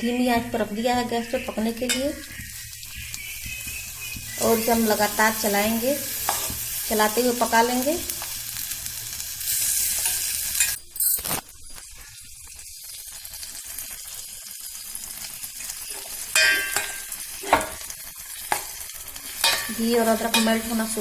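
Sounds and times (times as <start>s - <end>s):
soft sizzle: 0.0s - 21.0s
spoon scraping a pan: 0.9s - 8.8s, 9.4s - 11.4s, 15.8s - 21.0s
spoon knocking on a pan: 6.2s - 6.6s, 16.4s - 17.8s.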